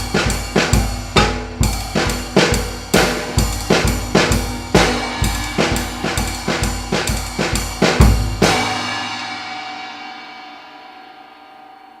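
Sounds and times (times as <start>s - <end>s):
drum kit playing a steady beat: 0.0s - 10.2s
bass drum thumps: 0.7s - 7.4s, 8.0s - 8.7s.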